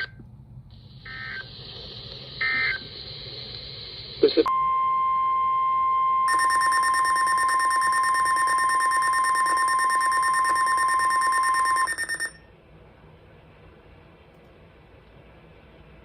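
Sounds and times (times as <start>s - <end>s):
steady warning alarm tone: 4.6s - 12.4s
shrill pulsing electronic alarm buzz: 6.2s - 12.4s.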